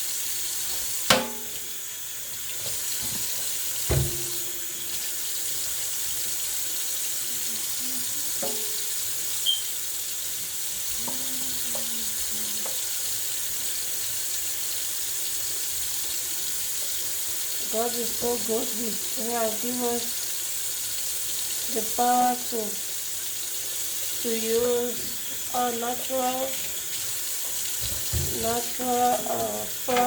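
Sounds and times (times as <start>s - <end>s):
tap water running into sink: 0.0s - 30.0s
knocks against sink: 1.1s - 1.6s, 3.9s - 4.7s, 27.8s - 28.5s.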